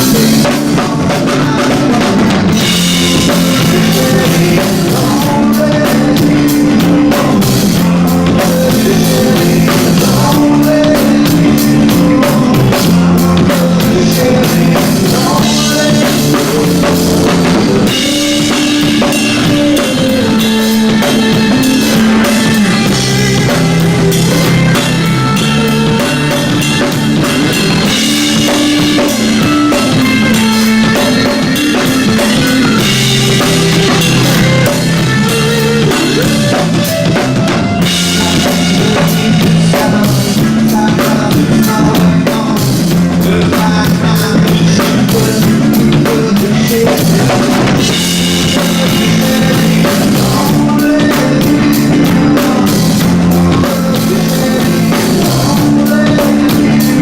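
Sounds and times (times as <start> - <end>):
bass guitar: 0.0 - 57.0
drum kit: 0.0 - 57.0
electric guitar: 0.0 - 57.0.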